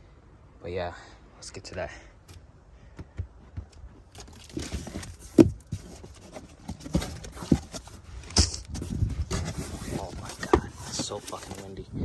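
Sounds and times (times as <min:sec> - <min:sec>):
wind buffeting microphone: 0:08.5 - 0:10.9, 0:11.8 - 0:12.0.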